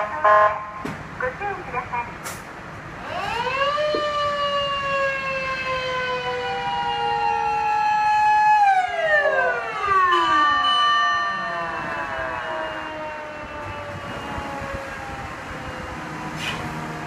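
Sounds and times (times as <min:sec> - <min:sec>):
fire engine siren wailing: 0:00.0 - 0:00.8, 0:02.9 - 0:17.0
second siren tone: 0:08.6 - 0:17.0.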